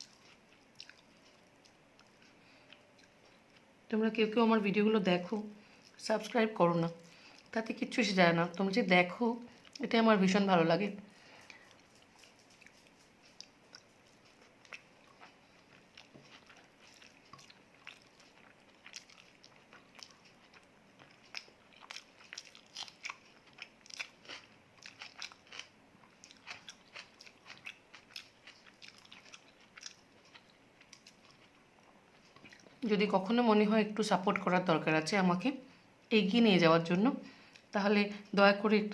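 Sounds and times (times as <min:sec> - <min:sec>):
person chewing food: 0:00.0 - 0:03.7, 0:07.0 - 0:07.5, 0:09.5 - 0:09.8, 0:11.2 - 0:32.8.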